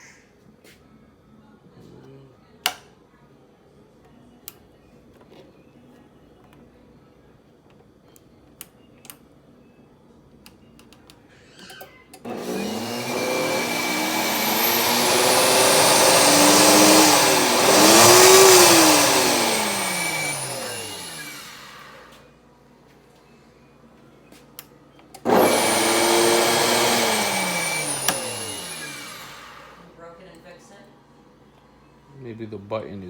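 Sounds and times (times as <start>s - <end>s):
electric blender motor whining: 12.2s - 22.2s, 25.2s - 29.8s.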